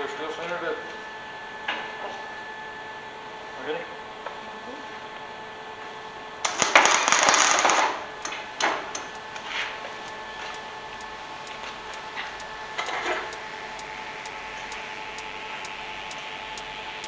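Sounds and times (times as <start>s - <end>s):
arc welder crackling: 6.5s - 9.5s.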